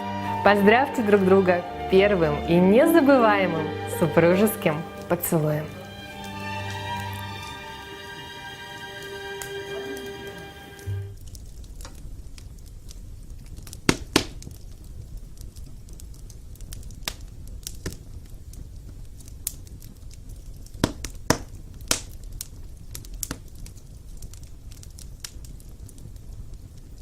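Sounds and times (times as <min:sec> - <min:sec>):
wood fire crackling: 0:00.0 - 0:27.0
fire pops: 0:04.4 - 0:27.0.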